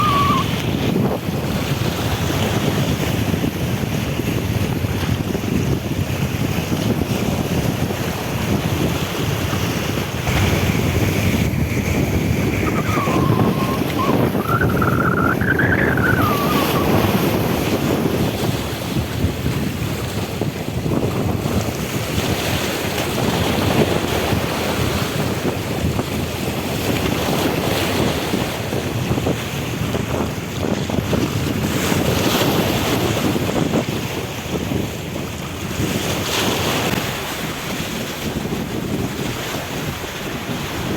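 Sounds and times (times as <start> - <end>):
wavering whistle-like tone: 0.0 - 0.6, 11.8 - 17.2
sea water splashing: 0.0 - 4.7, 7.8 - 19.1
wind buffeting microphone: 0.0 - 40.9.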